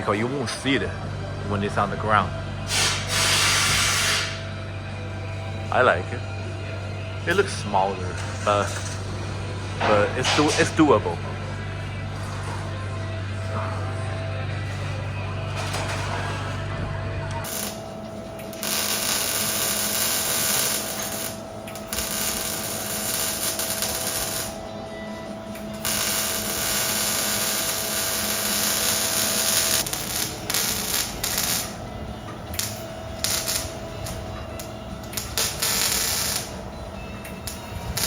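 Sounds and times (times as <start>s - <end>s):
power tool whining: 17.4s - 38.0s.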